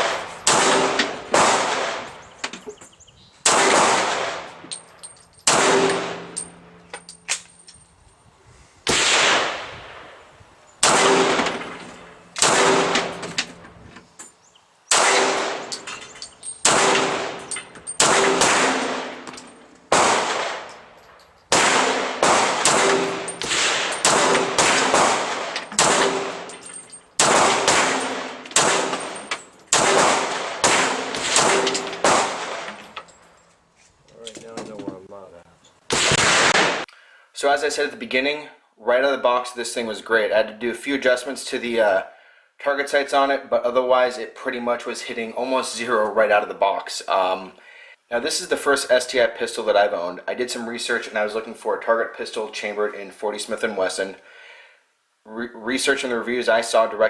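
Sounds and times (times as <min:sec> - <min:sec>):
pistol shots: 0:00.0 - 0:02.3, 0:03.4 - 0:04.7, 0:05.4 - 0:06.6, 0:08.9 - 0:10.2, 0:10.8 - 0:13.6, 0:14.9 - 0:15.9, 0:16.6 - 0:20.9, 0:21.5 - 0:33.0, 0:35.9 - 0:36.9.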